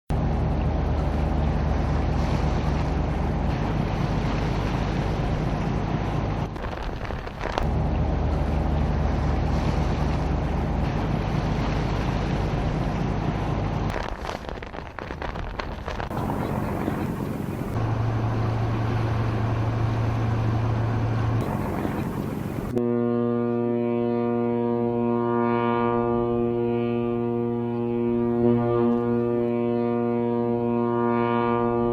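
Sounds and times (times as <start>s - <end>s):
sea noise: 0.1s - 23.3s
wind: 0.1s - 31.9s
machinery hum: 7.6s - 14.0s, 16.0s - 31.9s
horn-like musical chord: 21.4s - 31.9s.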